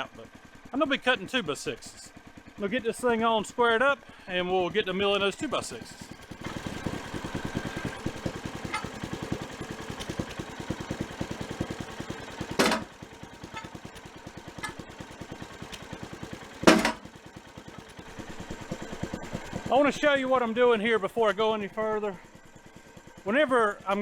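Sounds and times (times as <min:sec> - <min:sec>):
engine chugging: 0:00.0 - 0:24.0
loud knocks: 0:12.6 - 0:12.9, 0:16.7 - 0:17.1.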